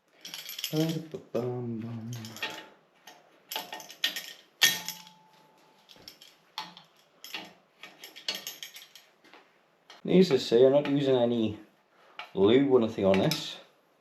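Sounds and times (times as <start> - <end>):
metal parts clinking: 0.1 - 1.1, 2.1 - 2.7, 3.5 - 9.1.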